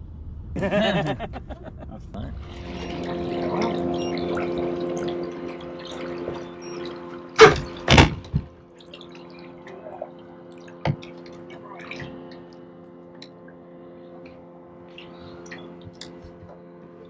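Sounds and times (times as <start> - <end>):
boat motor humming: 2.2 - 17.0
water splashing: 2.4 - 12.5.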